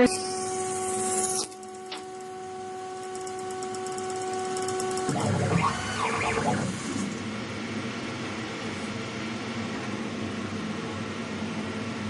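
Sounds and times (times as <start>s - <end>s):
stepper motor whine: 0.0s - 7.4s
motor stepping and grinding: 5.0s - 7.2s.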